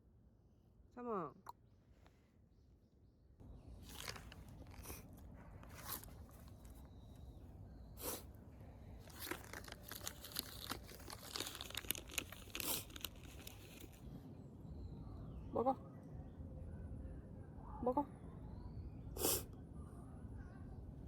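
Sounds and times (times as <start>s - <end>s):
crinkling and crunching: 3.8s - 7.0s, 9.0s - 14.0s
sharp crackles: 9.0s - 14.0s.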